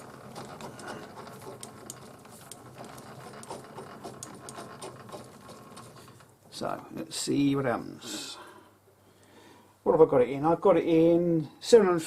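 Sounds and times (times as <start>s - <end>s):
small clicks and ticks: 0.0s - 6.3s.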